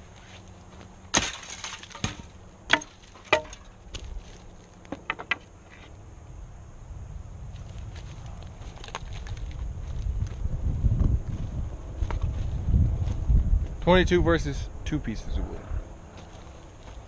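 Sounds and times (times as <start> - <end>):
wooden boards clattering: 1.2 - 4.1, 4.9 - 5.9
wooden knocks: 2.0 - 3.6, 4.9 - 5.5.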